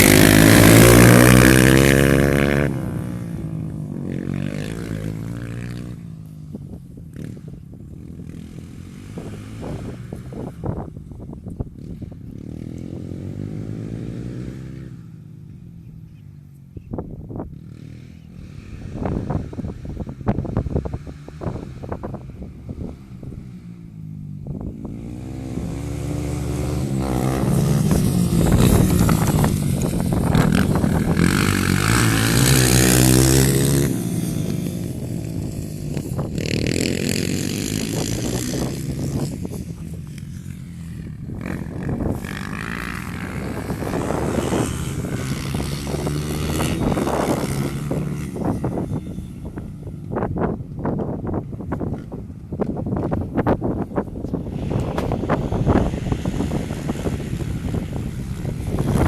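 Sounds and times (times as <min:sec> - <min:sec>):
motorcycle engine running: 0:00.0 - 0:59.0.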